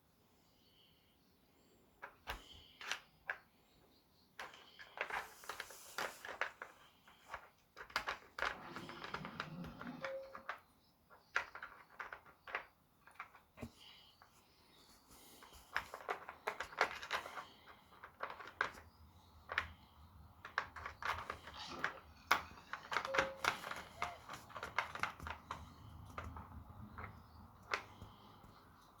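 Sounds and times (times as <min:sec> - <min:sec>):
puzzle toy clicks and knocks: 0:15.7 - 0:28.6.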